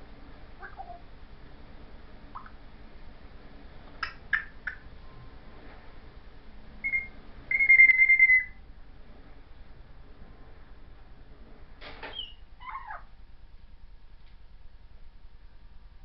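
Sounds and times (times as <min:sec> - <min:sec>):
parrot clicking: 0:04.0 - 0:04.8
parrot beep-like whistled tone: 0:06.8 - 0:08.6
parrot whistling: 0:06.8 - 0:08.6, 0:12.1 - 0:13.1.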